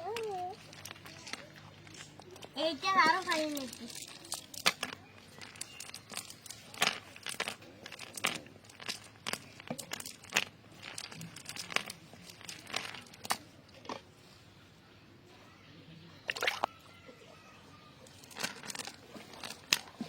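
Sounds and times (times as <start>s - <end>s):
rustling and crinkling: 0.0s - 14.4s, 16.3s - 20.0s.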